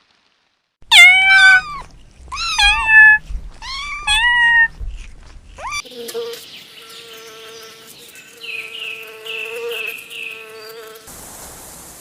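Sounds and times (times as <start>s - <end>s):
insect buzzing drone: 5.6s - 11.1s.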